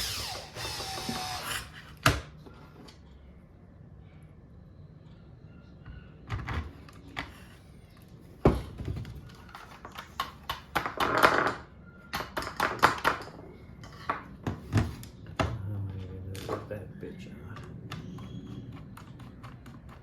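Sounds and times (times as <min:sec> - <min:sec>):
hard objects clicking and knocking: 0:08.5 - 0:16.8.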